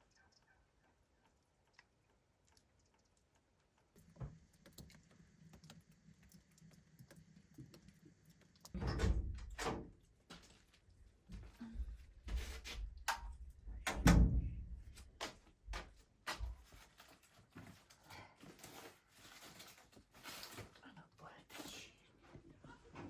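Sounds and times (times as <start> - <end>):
deep thuds: 14.0 - 15.0.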